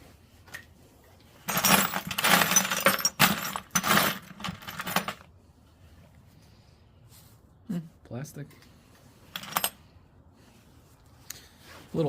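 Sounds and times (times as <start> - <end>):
metal bolts and screws clattering: 1.4 - 5.3, 9.3 - 9.8.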